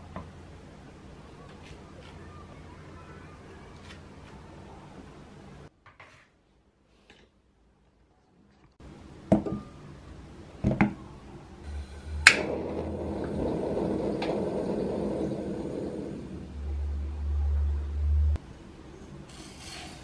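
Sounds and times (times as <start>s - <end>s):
steady rushing noise with hum: 11.7s - 18.4s.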